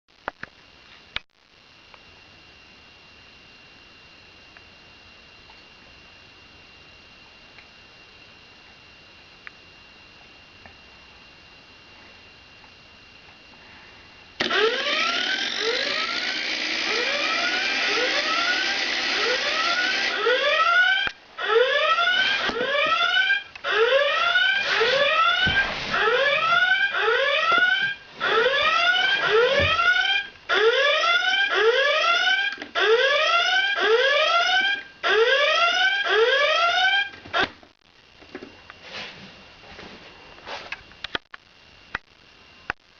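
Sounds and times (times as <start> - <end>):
alarm clock rising chirp: 14.4 - 37.0.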